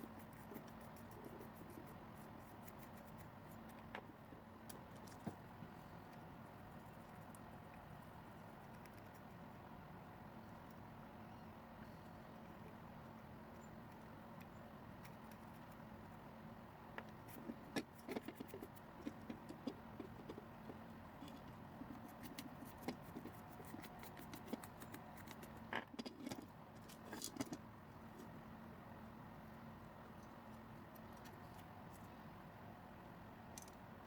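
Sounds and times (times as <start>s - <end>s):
low steady hum: 0.0s - 34.0s
small plastic parts clicking: 33.5s - 33.8s.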